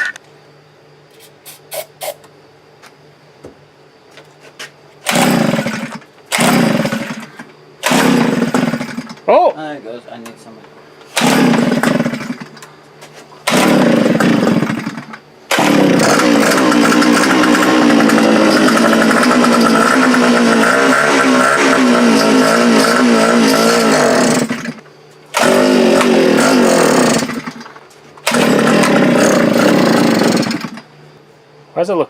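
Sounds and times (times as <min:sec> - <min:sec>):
auger two-stroke engine running: 0:05.0 - 0:09.2, 0:11.2 - 0:12.6, 0:13.4 - 0:30.9.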